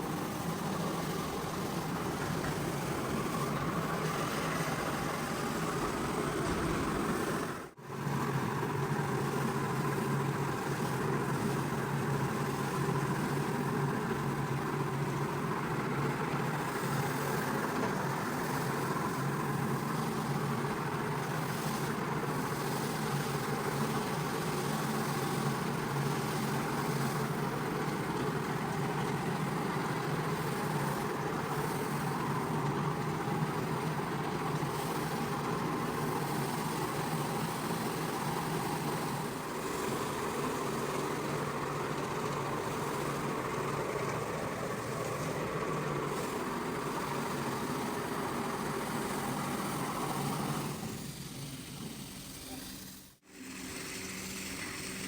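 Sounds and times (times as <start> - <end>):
carpet cleaning machine motor: 0.0 - 55.0.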